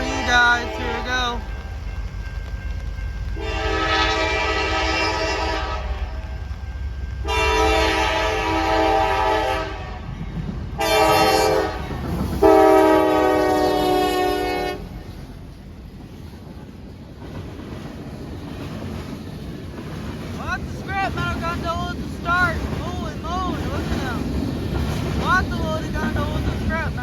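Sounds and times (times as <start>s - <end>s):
locomotive air horn blasts: 0.0s - 1.8s, 2.5s - 6.4s, 7.2s - 10.1s, 10.8s - 15.0s
train rumble: 0.0s - 27.0s.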